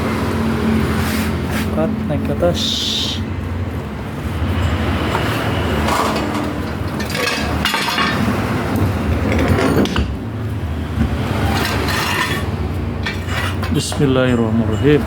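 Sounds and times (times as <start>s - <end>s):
metal tools clinking and scraping: 4.6s - 10.2s, 11.4s - 15.0s.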